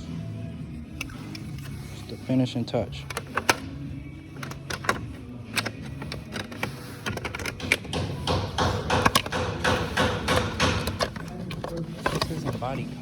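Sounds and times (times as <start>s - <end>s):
clicks and taps of car parts: 4.4s - 12.7s.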